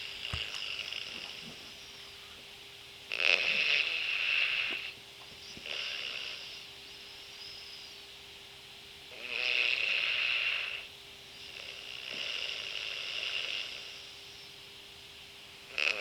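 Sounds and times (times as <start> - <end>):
faint steady hum: 0.0 - 16.0
person snoring: 11.6 - 14.0.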